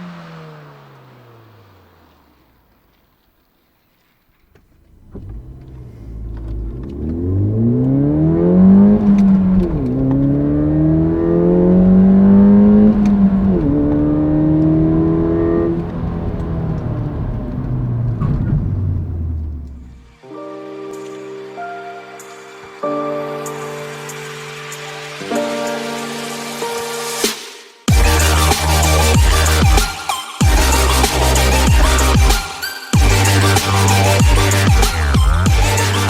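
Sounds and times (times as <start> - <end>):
car engine accelerating hard: 0.0 - 3.2, 4.8 - 20.2, 27.9 - 32.4, 33.0 - 36.0.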